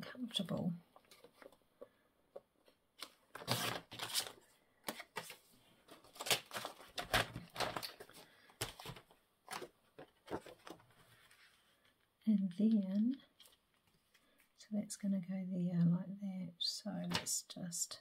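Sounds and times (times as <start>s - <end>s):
paper rustling and crinkling: 1.0s - 1.6s, 3.0s - 14.5s.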